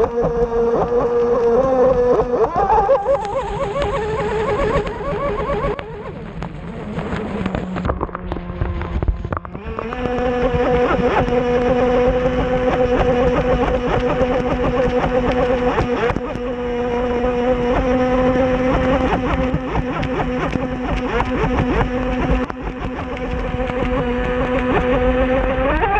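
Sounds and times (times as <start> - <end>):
electric motor whine: 0.0 - 25.9
water slapping against hull: 17.6 - 25.4.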